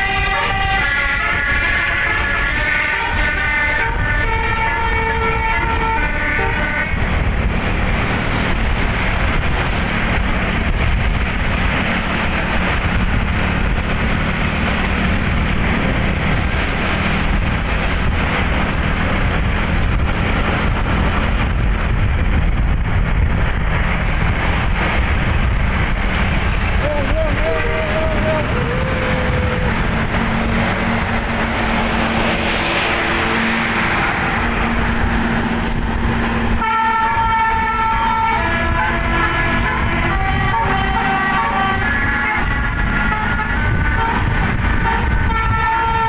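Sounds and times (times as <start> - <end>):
musical air horn melody: 0.0 - 7.1, 36.5 - 46.0
bus engine and road noise: 0.0 - 46.0.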